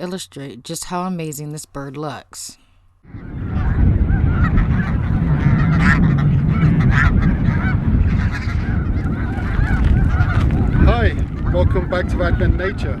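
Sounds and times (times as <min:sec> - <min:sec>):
flock of geese honking: 0:03.1 - 0:13.0
low rumble: 0:03.1 - 0:13.0.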